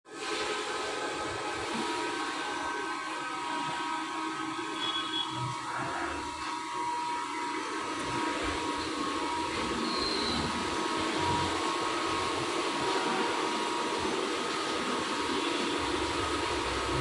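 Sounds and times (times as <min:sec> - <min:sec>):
machine humming: 0:00.7 - 0:17.0
whining tones: 0:15.7 - 0:17.0
noisy rush: 0:15.8 - 0:17.0.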